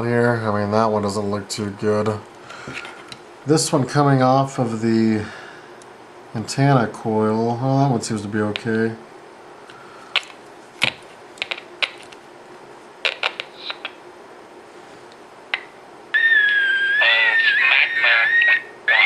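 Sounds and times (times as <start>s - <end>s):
garbled radio station audio: 13.0s - 14.0s, 16.2s - 19.0s
radio high-pitched squeal: 16.2s - 19.0s.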